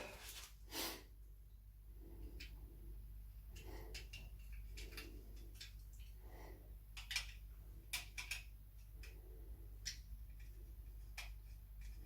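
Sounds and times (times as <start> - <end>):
faint steady hum: 0.0 - 12.0
small clicks and taps: 6.9 - 12.0.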